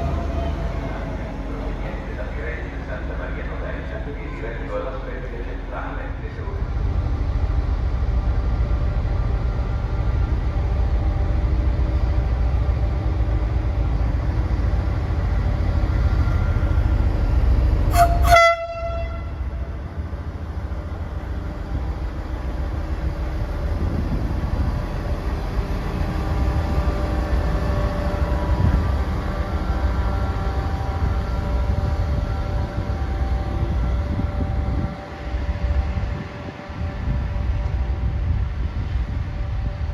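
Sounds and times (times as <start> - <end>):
train rumbling: 0.0 - 39.9
train horn toot: 17.9 - 19.8.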